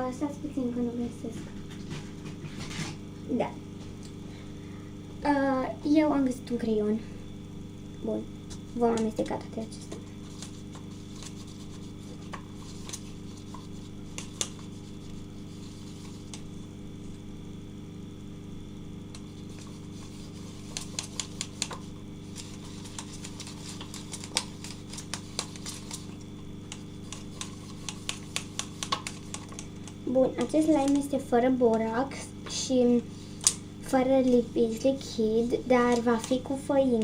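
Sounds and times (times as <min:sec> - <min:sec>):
steady low hum: 0:00.0 - 0:37.0
pencil stirring slime in container: 0:10.2 - 0:16.5, 0:19.2 - 0:31.8.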